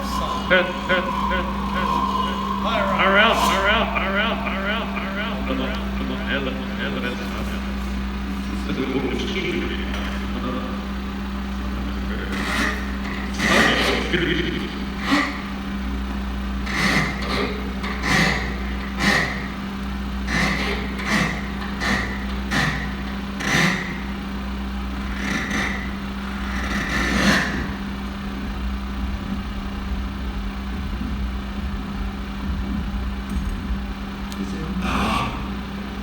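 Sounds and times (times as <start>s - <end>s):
low electrical hum: 0.0s - 36.0s.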